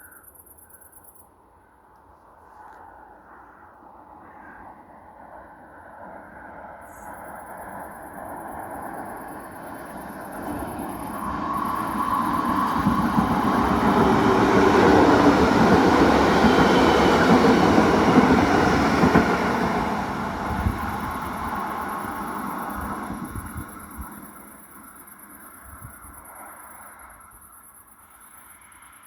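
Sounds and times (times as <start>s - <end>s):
rail vehicle rolling past: 4.6s - 29.0s.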